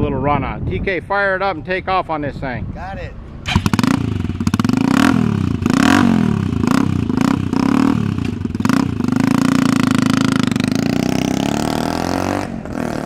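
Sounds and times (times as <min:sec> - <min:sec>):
scooter engine revving: 0:03.5 - 0:13.0.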